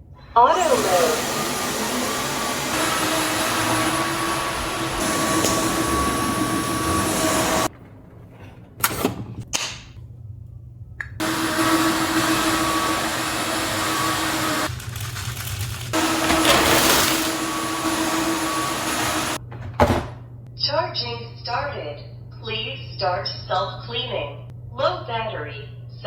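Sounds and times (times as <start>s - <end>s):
vacuum cleaner humming whir: 0.4s - 7.7s, 11.2s - 14.9s, 15.9s - 19.4s.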